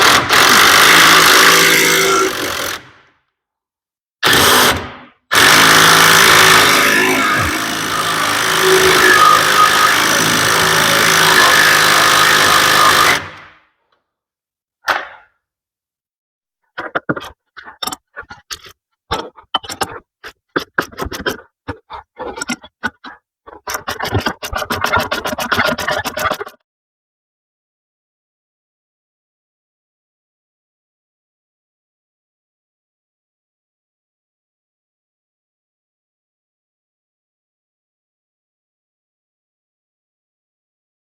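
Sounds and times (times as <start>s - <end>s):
power tool tightening nut: 0.0s - 2.9s, 4.2s - 13.4s, 16.8s - 26.6s.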